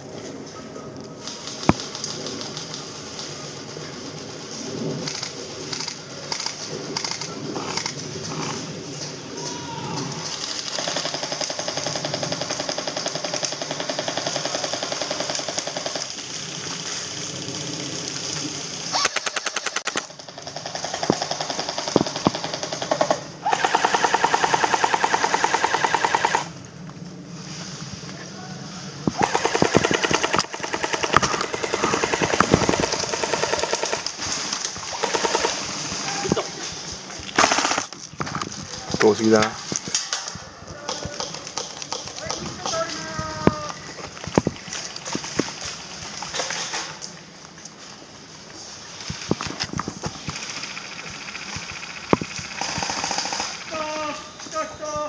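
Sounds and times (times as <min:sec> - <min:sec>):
airsoft gun full-auto rattle: 0:05.0 - 0:08.1, 0:10.3 - 0:17.8, 0:18.9 - 0:26.6, 0:29.1 - 0:35.8, 0:37.3 - 0:40.4, 0:49.0 - 0:54.0.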